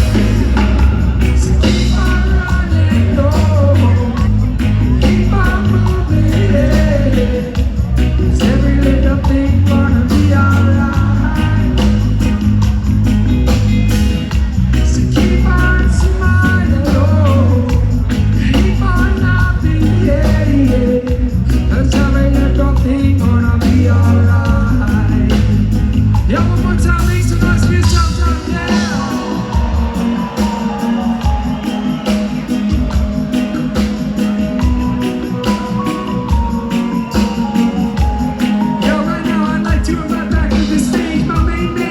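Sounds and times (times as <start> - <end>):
person singing: 0.0 - 12.9, 14.3 - 41.9
heavy bass line: 0.0 - 41.9
live reggae band playing: 0.0 - 41.9.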